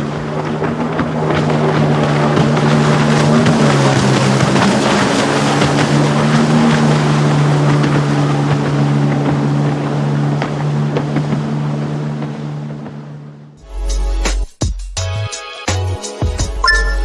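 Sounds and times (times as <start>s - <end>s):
jet ski engine running: 0.0s - 13.6s.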